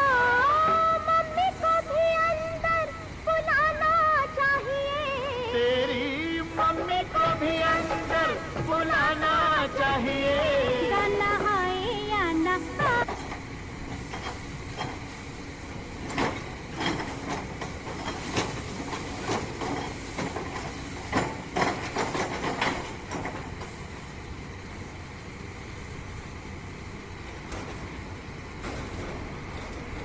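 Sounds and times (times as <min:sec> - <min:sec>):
low machine rumble: 0:00.0 - 0:20.0
sharp knocks and clanks: 0:16.0 - 0:23.8, 0:28.6 - 0:30.0.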